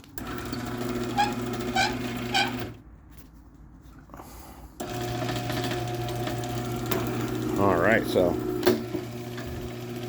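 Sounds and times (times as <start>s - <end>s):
garage door opener running: 0.1s - 2.8s, 4.8s - 10.0s
short squeals: 1.0s - 2.8s.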